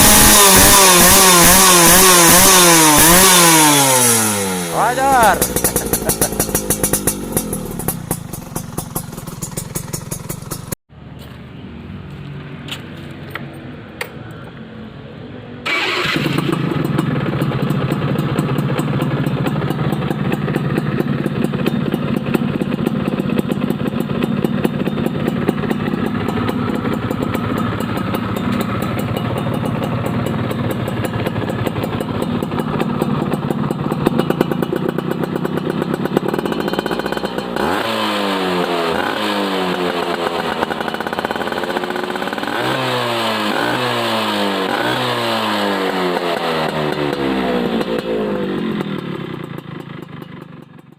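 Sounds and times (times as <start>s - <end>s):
rapid exhaust popping: 0.0s - 10.8s, 15.7s - 38.0s
two-stroke engine running: 0.0s - 10.8s, 15.7s - 50.9s.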